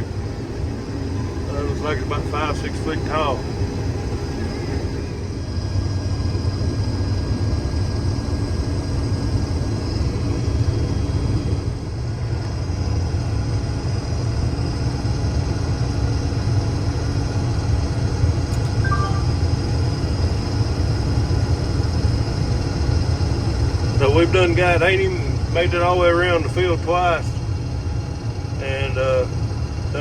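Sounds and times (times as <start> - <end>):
faint high whine: 0.0 - 5.5, 18.6 - 20.1
combine harvester rumbling: 0.0 - 12.9, 18.3 - 30.0.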